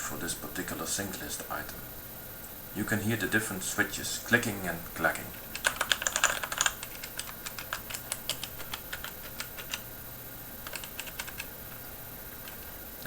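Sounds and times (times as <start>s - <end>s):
mechanical keyboard keys clicking: 5.5s - 9.8s, 10.6s - 11.8s.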